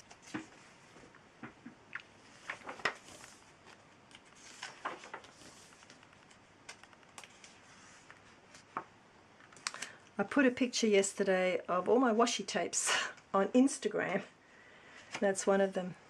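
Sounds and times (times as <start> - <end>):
soft paper rustles: 2.2 - 8.9.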